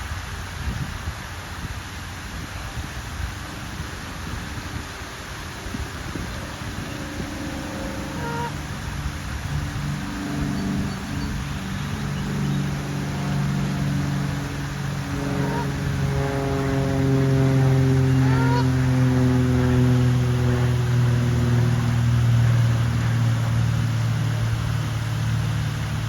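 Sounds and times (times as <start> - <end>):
motor engine droning past: 5.0 - 26.0
short bird calls gliding upward: 6.8 - 8.6, 15.2 - 15.9, 18.1 - 18.8.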